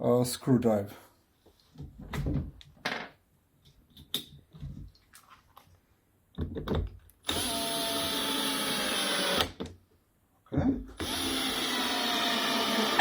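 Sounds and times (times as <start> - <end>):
cordless drill running: 7.2 - 9.6, 11.0 - 13.0.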